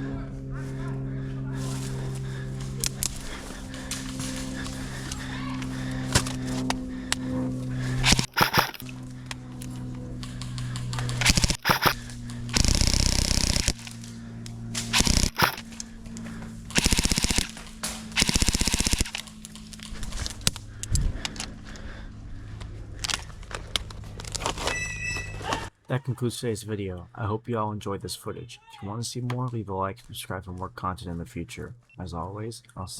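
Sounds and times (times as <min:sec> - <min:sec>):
airsoft guns firing bursts: 0:07.9 - 0:08.9, 0:10.6 - 0:14.1, 0:14.8 - 0:15.7, 0:16.7 - 0:20.2.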